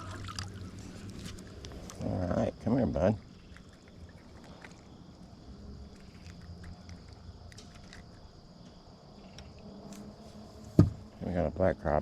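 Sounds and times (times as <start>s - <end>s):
clicks and rustles of handling fish: 0.0s - 2.0s
low steady hum: 0.0s - 12.0s.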